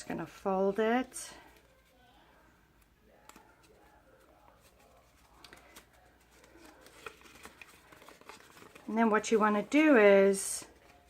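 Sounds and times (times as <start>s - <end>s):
card stock being folded: 3.1s - 11.0s.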